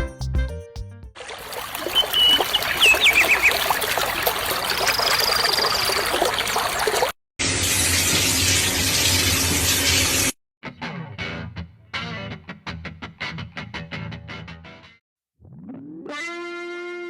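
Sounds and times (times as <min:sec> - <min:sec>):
water trickling: 0:01.2 - 0:07.2
thin high whistle: 0:01.9 - 0:03.4
short high chirps: 0:01.9 - 0:03.6.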